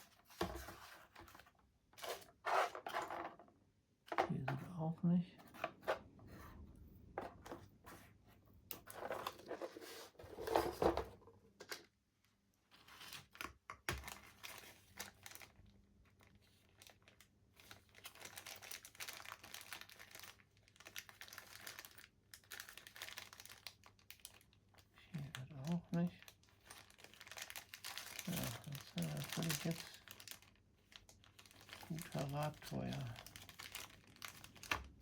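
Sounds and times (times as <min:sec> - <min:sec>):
plastic crinkling and rustling: 0:12.7 - 0:35.0.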